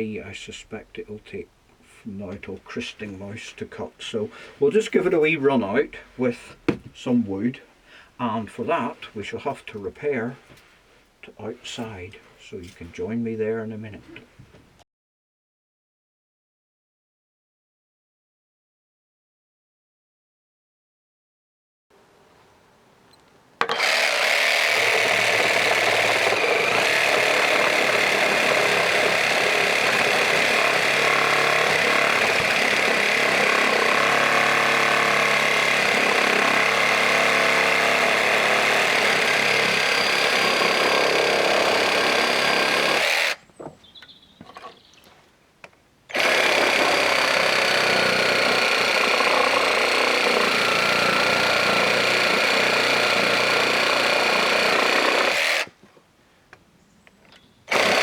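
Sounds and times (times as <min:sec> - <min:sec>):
reciprocating saw cutting branch: 0:23.6 - 0:43.4.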